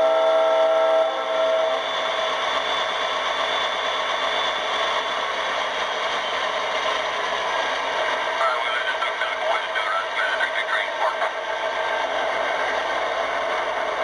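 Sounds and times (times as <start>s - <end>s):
model train horn blast: 0.0s - 1.8s
diesel engine running with clatter: 3.3s - 14.0s.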